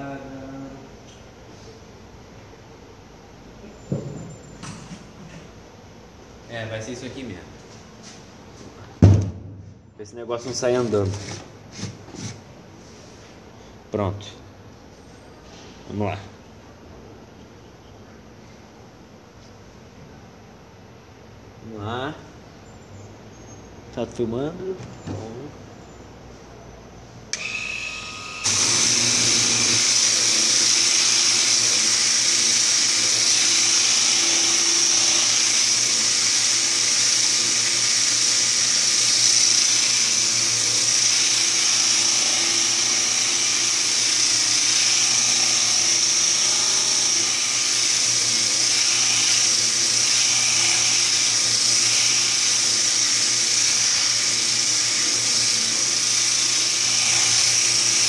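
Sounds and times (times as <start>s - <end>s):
sandpaper grinding on wood: 10.4s - 12.4s, 28.5s - 58.0s
sander motor running: 27.3s - 58.0s.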